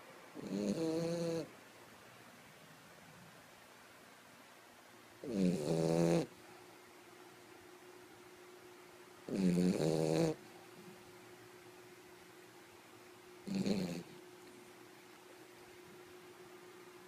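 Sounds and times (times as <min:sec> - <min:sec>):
faint steady hum: 0:00.0 - 0:17.0
dog snoring: 0:00.4 - 0:01.5, 0:05.2 - 0:06.4, 0:09.3 - 0:10.5, 0:13.4 - 0:14.2.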